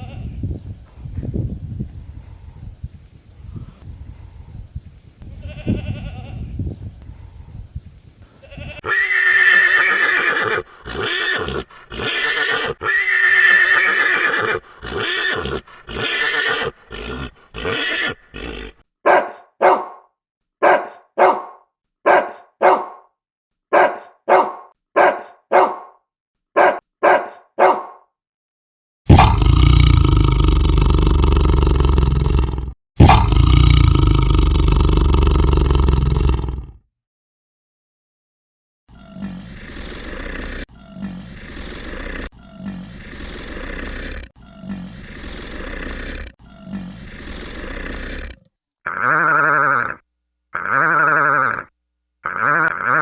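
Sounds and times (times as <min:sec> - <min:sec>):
zebra braying: 0:08.5 - 0:18.8.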